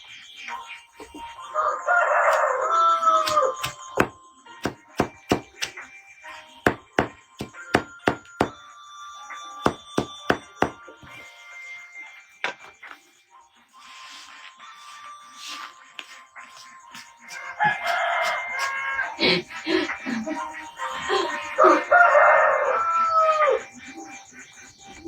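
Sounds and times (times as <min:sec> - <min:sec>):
rooster crowing: 0:01.5 - 0:04.1, 0:17.3 - 0:19.4, 0:21.0 - 0:23.7
blade chopping wood: 0:03.2 - 0:05.8, 0:06.7 - 0:08.6, 0:09.7 - 0:10.8.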